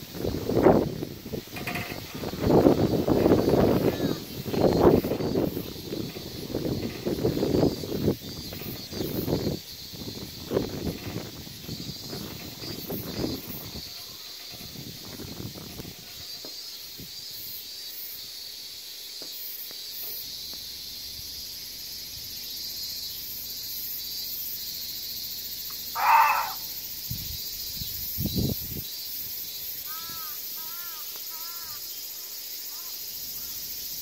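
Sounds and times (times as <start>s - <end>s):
steady high hiss: 0.0s - 34.0s
faint arched chirps: 1.3s - 18.5s, 19.9s - 34.0s
deer bark: 25.9s - 26.7s.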